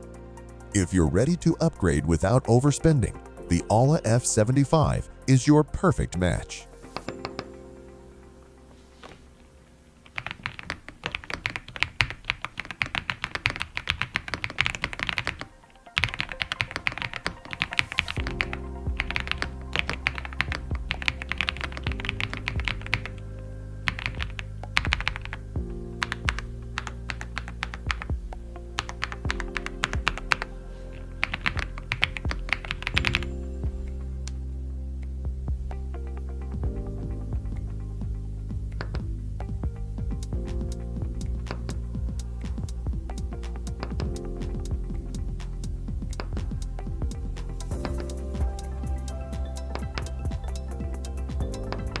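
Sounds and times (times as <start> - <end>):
background music with low tones: 0.0 - 11.1, 13.5 - 52.0
mechanical keyboard typing: 10.1 - 23.2.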